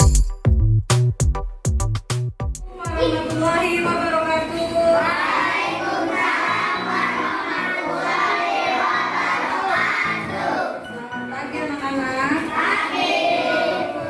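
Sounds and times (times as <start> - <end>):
instrumental accompaniment: 0.0 - 4.2
children singing: 4.7 - 11.0, 12.3 - 14.0.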